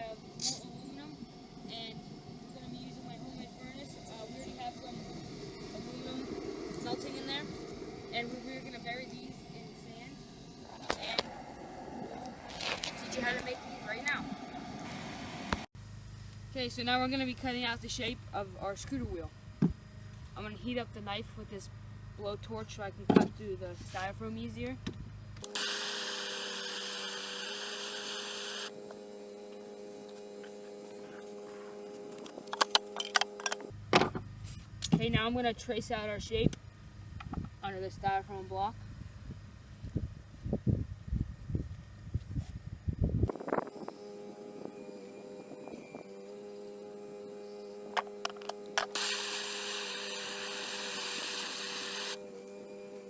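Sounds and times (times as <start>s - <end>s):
blowtorch hissing: 0.0s - 15.7s, 25.4s - 28.7s, 48.9s - 52.2s
electrical hum: 0.0s - 53.0s
loud steady hiss: 25.4s - 30.6s, 48.8s - 52.2s.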